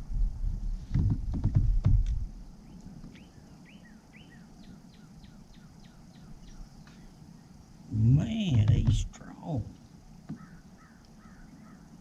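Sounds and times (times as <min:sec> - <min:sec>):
low knocks and bumps: 0:00.8 - 0:02.3, 0:08.4 - 0:09.1
songbird chirping: 0:02.4 - 0:12.0.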